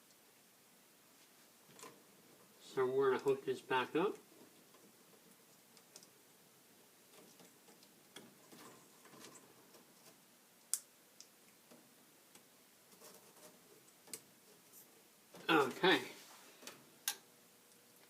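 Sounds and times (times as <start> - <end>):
wire connectors clicking: 4.1 - 6.2.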